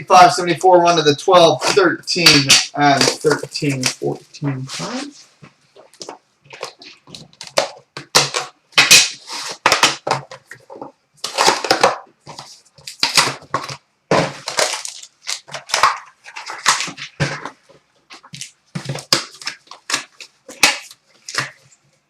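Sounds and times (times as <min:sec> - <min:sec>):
packaging crinkling and tearing: 0:11.2 - 0:17.5.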